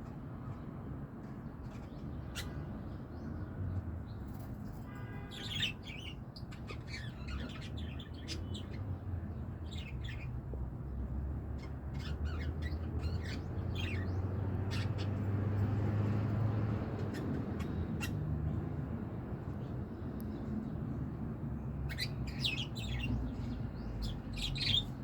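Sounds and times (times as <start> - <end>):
lovebirds chirping: 5.2 - 10.4, 11.6 - 15.2, 21.8 - 25.0.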